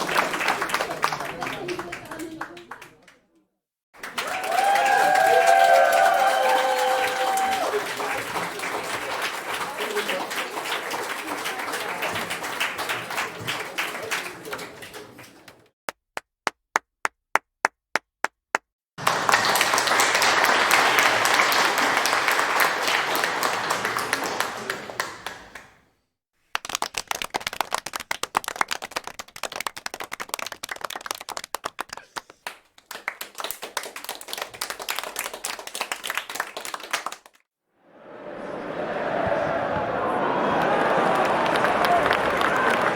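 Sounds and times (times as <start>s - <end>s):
crowd applauding: 0.0s - 3.2s, 4.0s - 15.7s, 19.0s - 25.8s, 26.5s - 42.9s
small group clapping: 0.0s - 3.4s, 4.0s - 25.9s, 26.5s - 42.9s
single handclaps: 26.5s - 37.4s, 39.2s - 42.9s.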